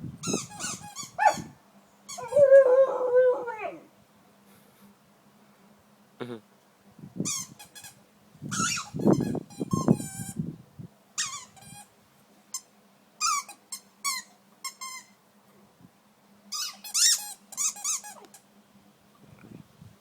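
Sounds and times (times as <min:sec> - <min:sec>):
squeaky dog toy squeaking: 0:00.2 - 0:01.4, 0:08.5 - 0:10.3, 0:11.2 - 0:11.8, 0:13.2 - 0:15.1, 0:16.5 - 0:18.2.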